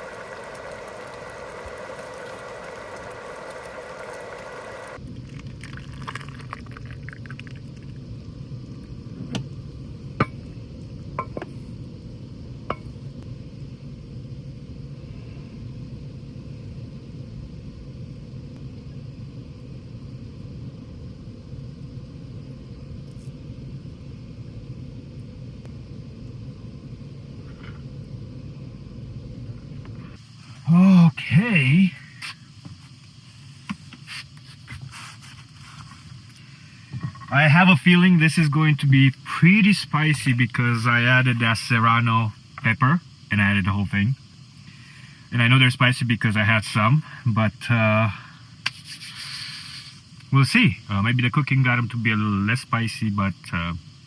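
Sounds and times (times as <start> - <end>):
low steady rumble: 0.0 - 32.0
steady humming tone: 0.0 - 45.4.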